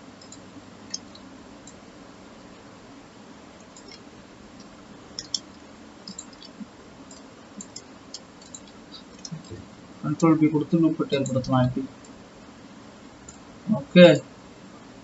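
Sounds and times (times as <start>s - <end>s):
low steady hum: 0.0s - 15.0s
computer mouse and keyboard clicks: 0.2s - 1.8s, 3.6s - 9.6s.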